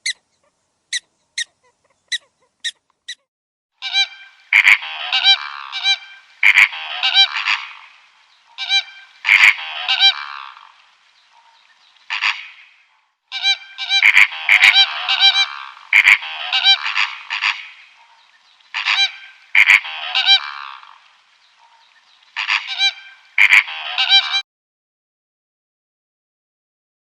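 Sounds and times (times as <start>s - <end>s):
geese honking: 3.8s - 24.4s.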